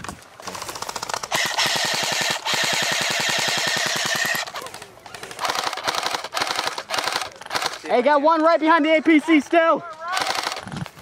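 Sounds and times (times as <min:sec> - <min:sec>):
airsoft guns firing full-auto: 0:00.4 - 0:07.8, 0:10.1 - 0:10.6.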